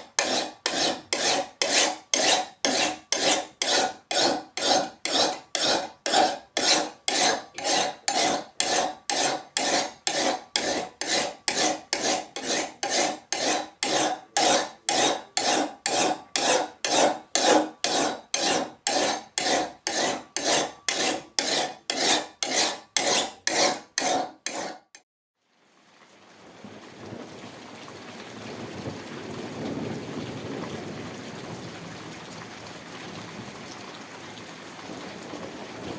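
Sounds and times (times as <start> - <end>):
hand file rasping: 0.0 - 25.0.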